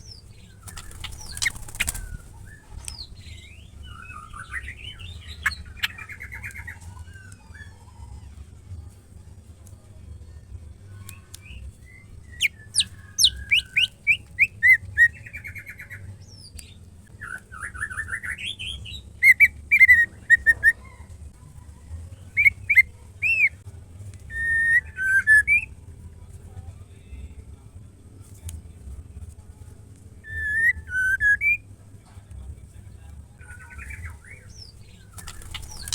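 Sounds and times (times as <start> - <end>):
low steady hum: 0.0 - 35.9
bird whistling and trilling: 11.9 - 15.9, 17.2 - 20.8, 22.4 - 23.6, 24.3 - 25.7, 30.2 - 31.6, 33.7 - 35.9.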